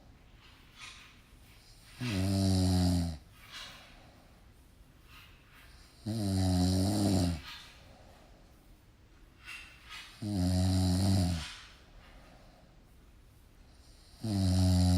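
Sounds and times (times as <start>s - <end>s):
person snoring: 2.0s - 3.2s, 6.0s - 7.4s, 10.2s - 11.4s, 14.0s - 14.9s.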